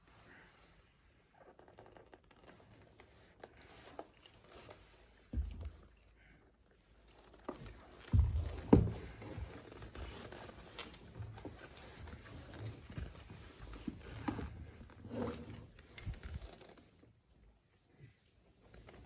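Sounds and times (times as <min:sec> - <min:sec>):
cardboard box rustling and knocking: 0:08.1 - 0:09.6.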